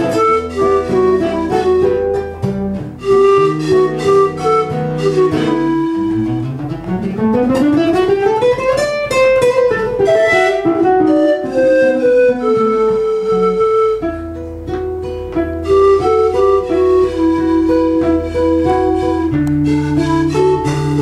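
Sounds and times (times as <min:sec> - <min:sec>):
guitar melody: 0:00.0 - 0:21.0.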